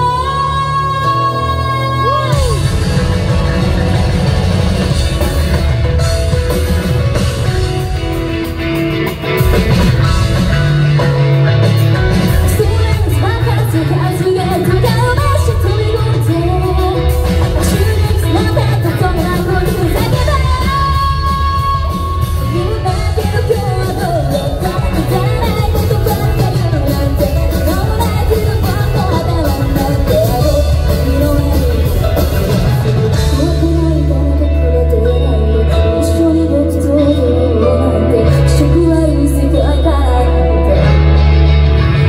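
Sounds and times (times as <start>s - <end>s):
woman singing lead vocal: 0.0s - 4.1s, 12.2s - 41.5s
live rock band: 0.0s - 42.0s.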